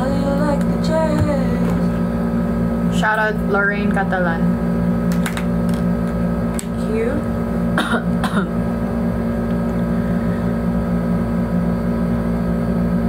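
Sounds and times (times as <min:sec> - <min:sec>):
low hum: 0:00.0 - 0:13.0
person coughing: 0:07.8 - 0:08.6.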